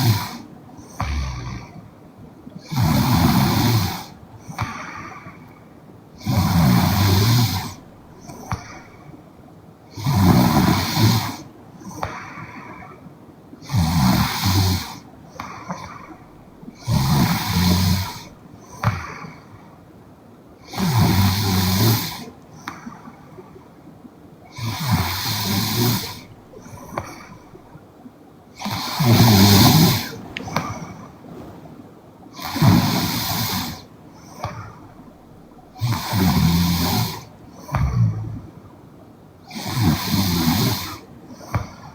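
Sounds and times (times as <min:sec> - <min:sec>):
woman snoring: 0:00.0 - 0:01.8, 0:02.6 - 0:04.1, 0:06.2 - 0:07.8, 0:13.6 - 0:15.0, 0:16.8 - 0:18.3, 0:20.7 - 0:22.3, 0:24.6 - 0:26.3, 0:28.6 - 0:30.8, 0:35.8 - 0:38.4
soft breathing: 0:00.0 - 0:10.0, 0:10.6 - 0:20.0, 0:20.6 - 0:41.9.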